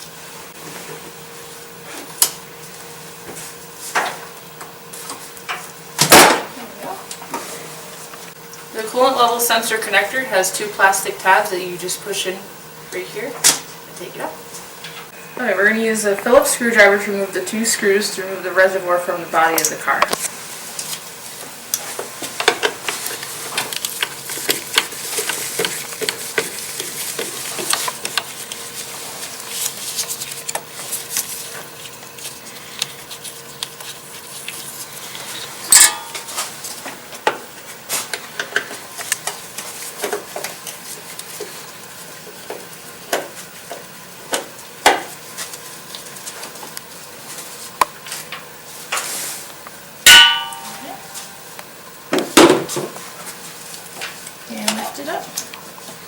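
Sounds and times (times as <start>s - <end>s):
loud metallic clinks: 50.1s - 50.8s.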